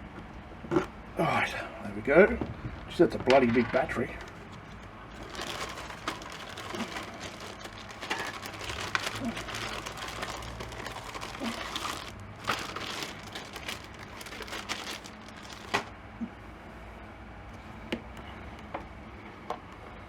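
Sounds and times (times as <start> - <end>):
light rustling: 2.8 - 15.9.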